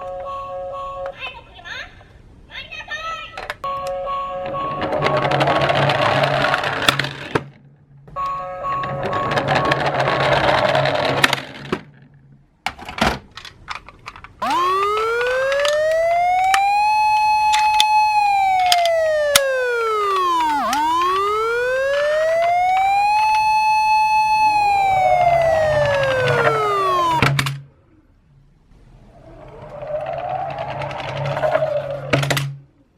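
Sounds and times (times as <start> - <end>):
sharp clicks: 14.4 - 27.3
wailing siren: 14.4 - 27.3.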